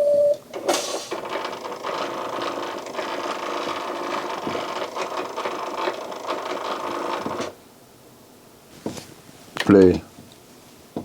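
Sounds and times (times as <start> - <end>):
cd changer motor whirring: 0.0 - 7.6.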